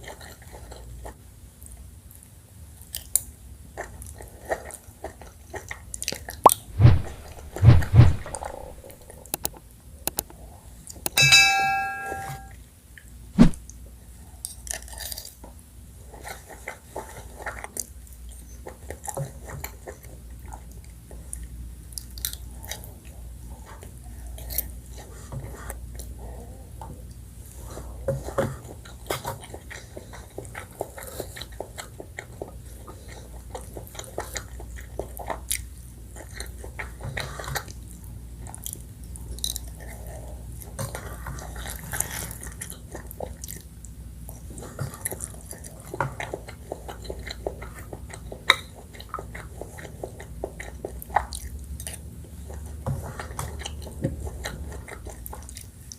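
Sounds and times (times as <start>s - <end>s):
wet chewing and smacking: 2.8s - 7.6s, 14.4s - 25.1s, 28.2s - 55.9s
low steady hum: 11.1s - 12.5s.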